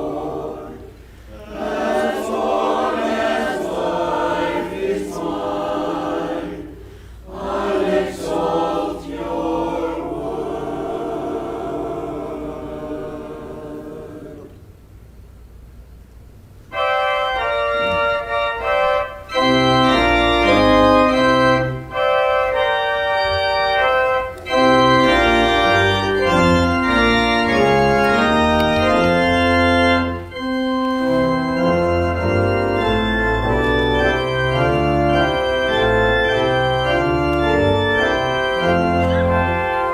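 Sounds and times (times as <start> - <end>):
church organ playing chords: 0.0 - 14.4, 16.7 - 39.9
voices singing a held chord: 0.0 - 14.8.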